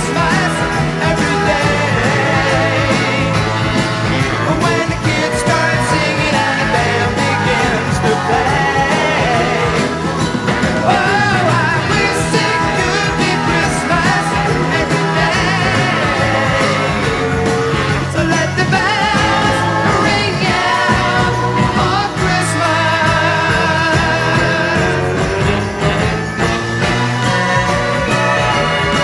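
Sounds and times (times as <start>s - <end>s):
song with singing and full band: 0.0s - 29.0s.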